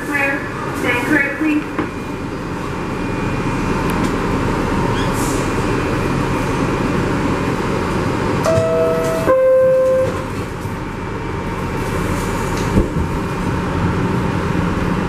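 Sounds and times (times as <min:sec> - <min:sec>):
subway train rumbling: 0:00.0 - 0:15.0
door chime tone: 0:08.4 - 0:10.3.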